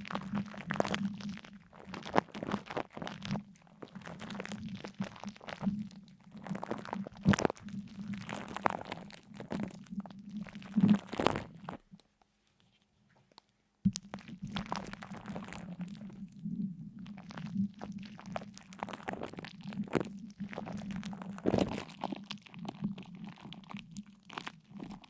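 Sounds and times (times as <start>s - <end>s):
crunching and crackling: 0.0s - 25.0s.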